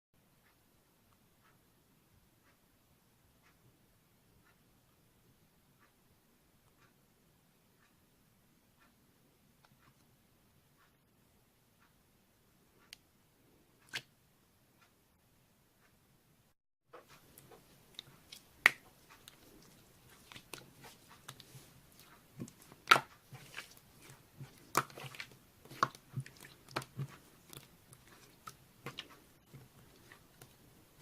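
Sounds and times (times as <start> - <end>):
slime squished by hand: 17.9 - 29.1.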